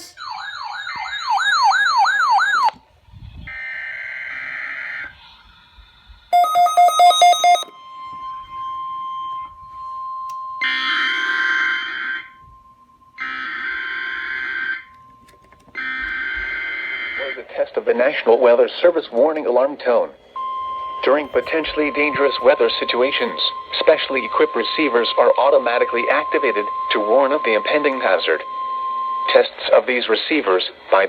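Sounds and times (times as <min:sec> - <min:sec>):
sweeping siren-like tone: 0:00.0 - 0:02.7, 0:03.4 - 0:17.4, 0:20.3 - 0:31.0
steady single-pitch warning tone: 0:06.3 - 0:17.6, 0:20.1 - 0:31.0.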